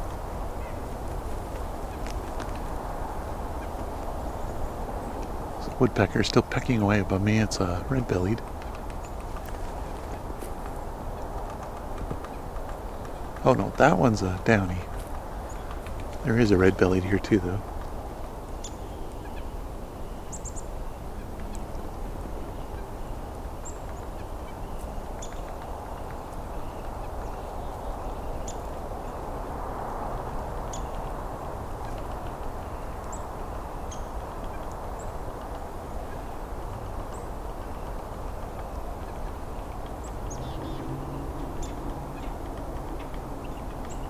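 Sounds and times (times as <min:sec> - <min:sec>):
steady low rush: 0:00.0 - 0:17.8
high bird call notes: 0:13.1 - 0:17.7.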